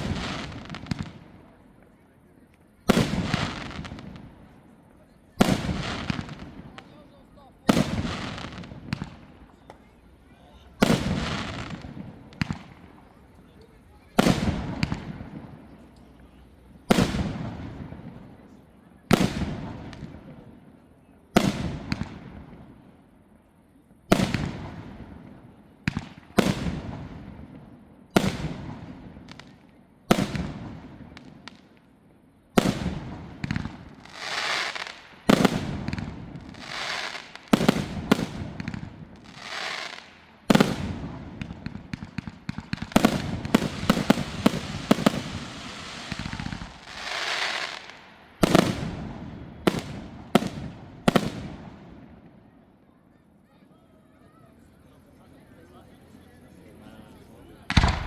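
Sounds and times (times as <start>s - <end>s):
firework crackling: 0.0s - 20.6s, 21.3s - 22.8s, 24.1s - 52.3s, 57.6s - 58.0s
firework shells bursting: 32.6s - 51.7s, 57.7s - 58.0s.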